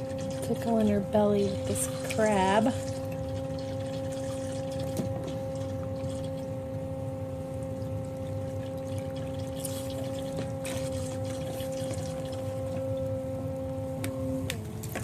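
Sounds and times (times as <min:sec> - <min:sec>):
churning bubbling water: 0:00.0 - 0:06.6, 0:07.7 - 0:12.8
bubble-jet motor humming: 0:00.0 - 0:15.0.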